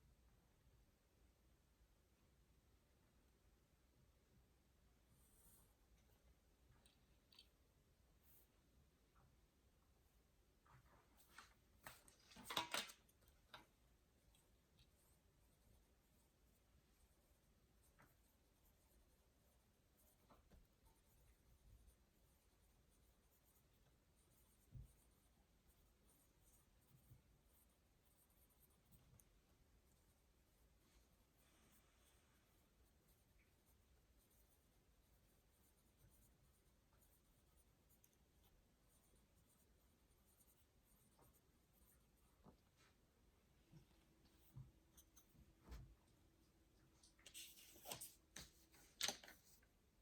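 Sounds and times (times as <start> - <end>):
pen scratching on paper: 32.5 - 42.1.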